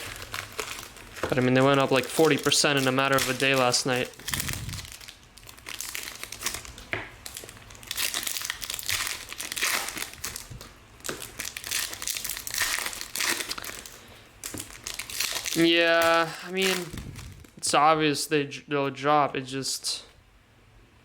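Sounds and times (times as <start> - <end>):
wrappers crinkling and tearing: 0.0 - 17.6.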